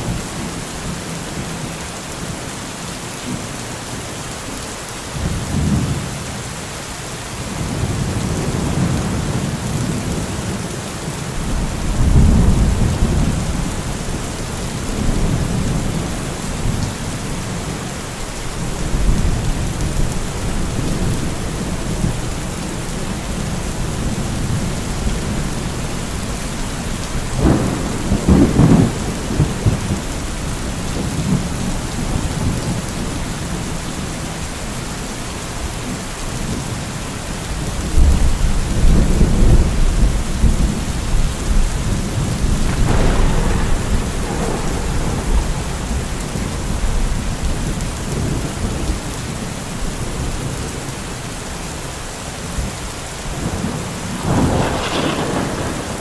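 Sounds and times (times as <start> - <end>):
steady rain: 0.0 - 56.0
rolling thunder: 11.3 - 17.7, 18.6 - 33.0, 37.9 - 50.8, 53.3 - 56.0
thunder crack: 42.2 - 48.4, 53.4 - 56.0.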